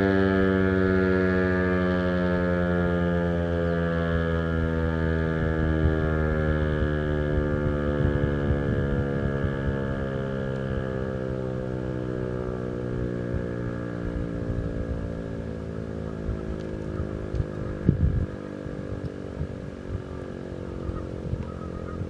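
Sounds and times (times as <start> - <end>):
warning siren winding down: 0.0 - 22.0
irregular low rumble: 5.4 - 22.0.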